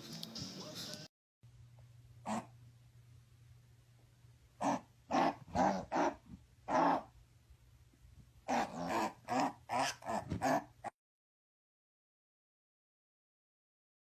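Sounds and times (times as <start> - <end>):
dog barking and growling: 2.2 - 2.5, 4.6 - 7.2, 8.4 - 11.0.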